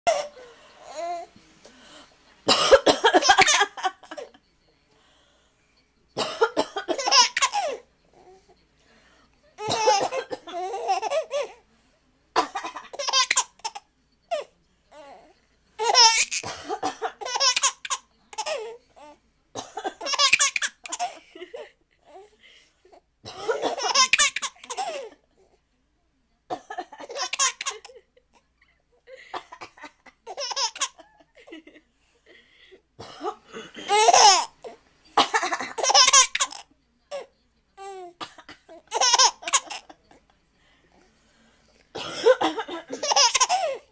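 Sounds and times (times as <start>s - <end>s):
old woman coughing: 2.5s - 4.2s, 6.2s - 7.8s, 9.6s - 11.6s, 16.4s - 17.3s, 23.3s - 24.0s, 33.0s - 34.4s, 35.2s - 36.1s, 41.9s - 43.9s.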